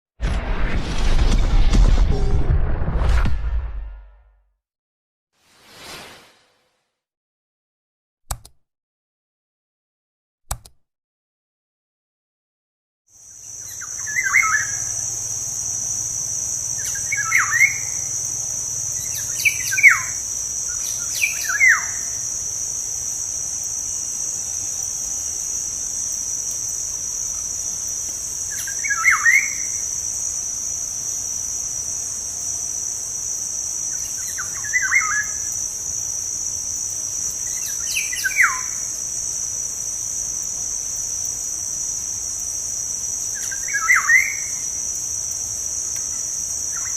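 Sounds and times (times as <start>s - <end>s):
high-pitched insect drone: 13.2s - 46.9s
bird whistled calls: 13.8s - 14.8s, 34.2s - 35.4s.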